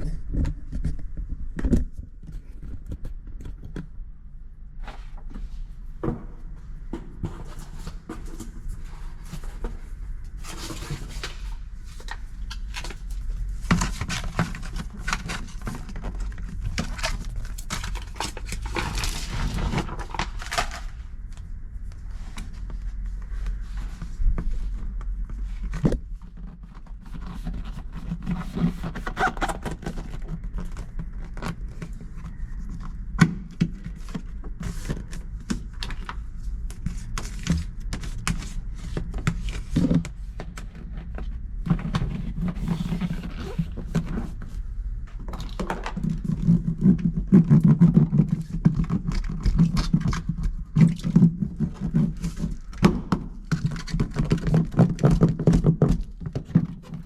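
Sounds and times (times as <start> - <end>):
clicks knocks and scraping: 0.0 - 4.1, 4.9 - 21.5
low steady hum: 0.0 - 57.0.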